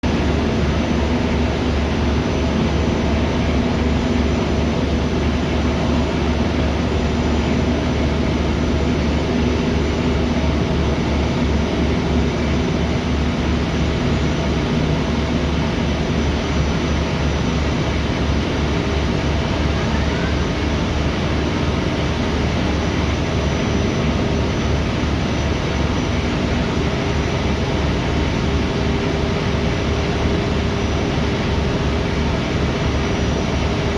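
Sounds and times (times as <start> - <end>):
ferry engine rumbling: 0.0 - 33.9.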